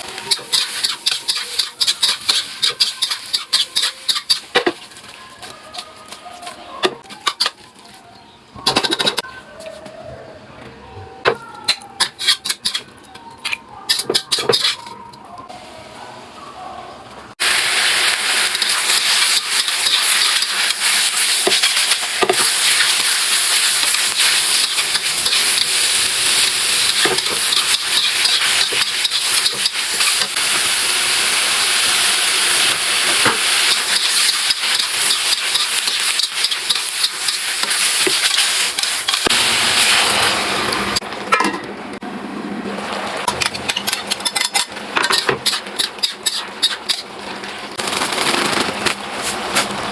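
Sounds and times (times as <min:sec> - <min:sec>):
food sizzling in hot oil: 0:00.0 - 0:05.2, 0:17.4 - 0:41.0
cooking utensils clicking: 0:00.2 - 0:04.8, 0:08.6 - 0:09.2, 0:11.6 - 0:15.2, 0:18.5 - 0:30.4, 0:33.0 - 0:39.3, 0:43.3 - 0:47.1.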